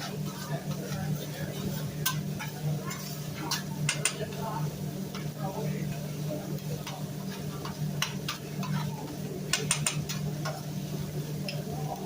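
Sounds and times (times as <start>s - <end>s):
metal spatulas clicking on griddle: 2.0s - 4.4s, 7.6s - 8.9s, 9.5s - 10.6s.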